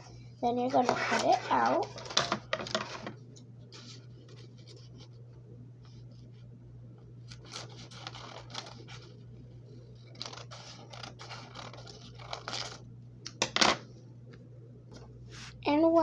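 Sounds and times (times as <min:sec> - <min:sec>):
scissors snipping paper: 0:07.3 - 0:09.1, 0:10.0 - 0:12.8.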